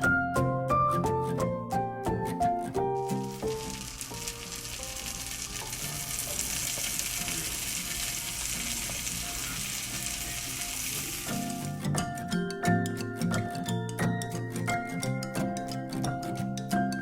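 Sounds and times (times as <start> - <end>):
faint background music: 0.0 - 17.0
food sizzling in a pan: 3.0 - 11.8.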